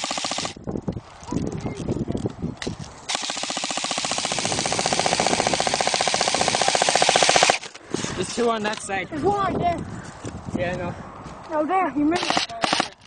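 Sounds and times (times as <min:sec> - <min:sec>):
airsoft gun full-auto burst: 0:00.0 - 0:00.6, 0:03.1 - 0:07.7, 0:12.2 - 0:13.0.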